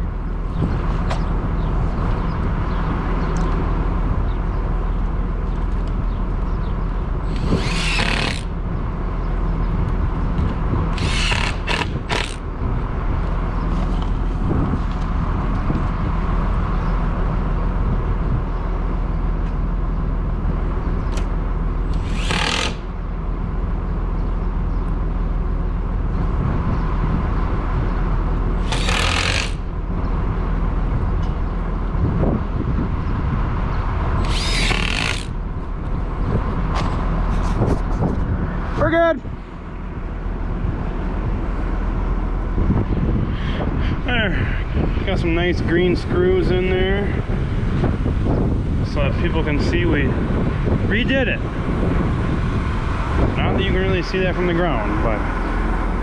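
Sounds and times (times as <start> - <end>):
loader engine running: 0.0 - 37.6
power driver driving screws: 7.2 - 8.6, 10.9 - 12.4, 21.1 - 23.0, 28.6 - 29.7, 34.2 - 35.4.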